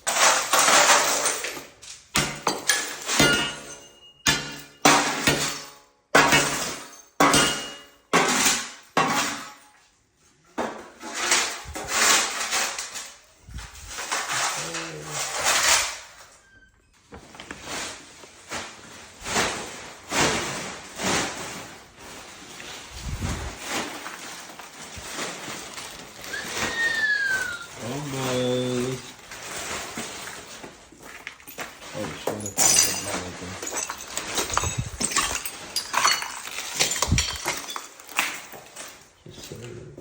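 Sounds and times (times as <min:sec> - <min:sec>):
tile pieces cracking and clattering: 0:32.4 - 0:39.0.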